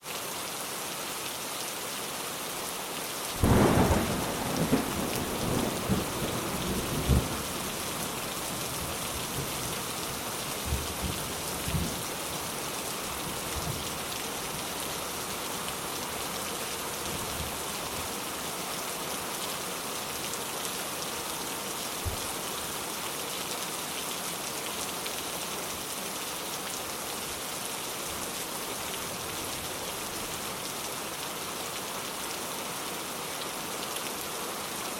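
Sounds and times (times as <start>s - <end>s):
heavy rain falling: 0.1s - 34.9s
thunder rolling and crackling: 3.4s - 7.7s.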